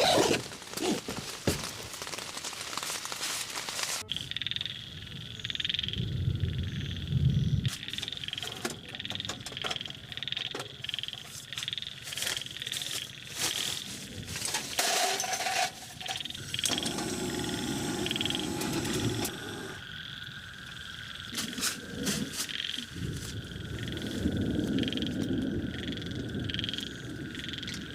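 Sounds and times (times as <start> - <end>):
frogs calling in chorus: 4.0 - 6.0, 7.7 - 14.0, 16.1 - 24.1, 24.8 - 27.9.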